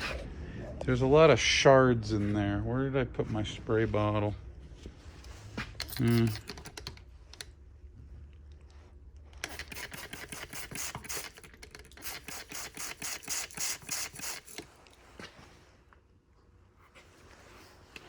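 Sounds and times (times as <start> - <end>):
spray bottle hissing sprays: 9.4 - 14.7.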